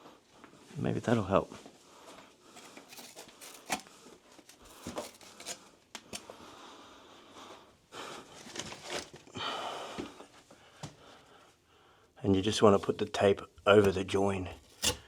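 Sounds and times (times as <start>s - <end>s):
paper tape rustling and scraping: 2.6s - 6.2s, 8.4s - 9.3s, 14.6s - 15.0s.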